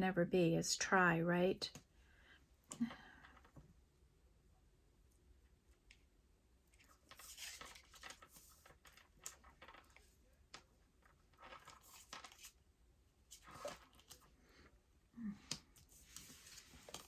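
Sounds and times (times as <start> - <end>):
cards rustling and crinkling: 6.8 - 12.6, 13.3 - 14.4, 15.4 - 17.0.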